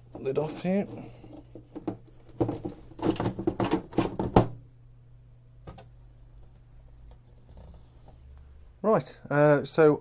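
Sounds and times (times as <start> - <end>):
plastic lid knocking and scraping: 0.2 - 4.6.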